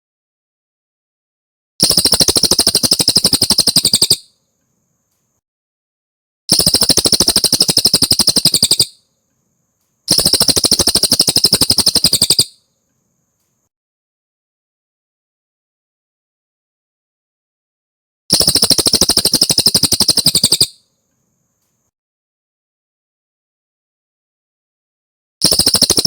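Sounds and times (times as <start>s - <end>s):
songbird trilling: 1.8s - 4.3s, 6.5s - 9.0s, 10.1s - 12.6s, 18.3s - 20.8s.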